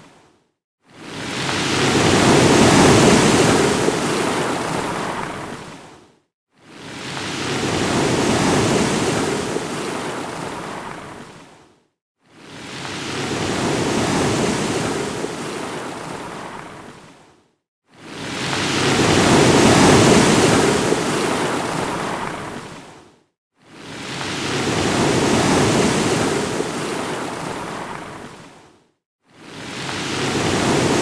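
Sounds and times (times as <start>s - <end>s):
ocean wave crashing: 1.1s - 5.6s, 29.6s - 31.0s.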